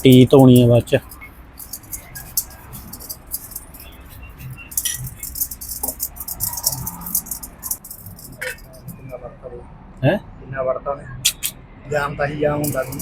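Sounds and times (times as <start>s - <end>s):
small steel parts clinking: 0.0s - 9.1s, 12.6s - 13.0s.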